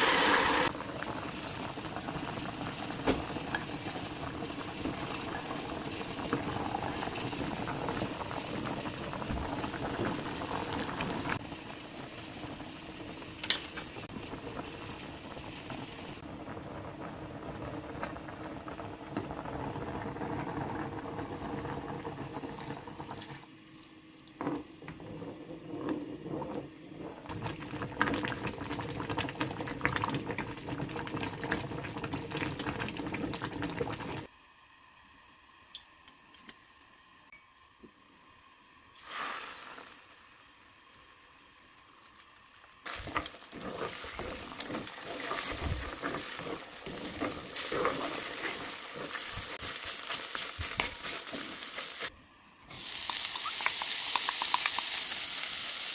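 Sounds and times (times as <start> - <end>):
food bubbling in a pan: 0.0 - 34.9, 38.5 - 55.9.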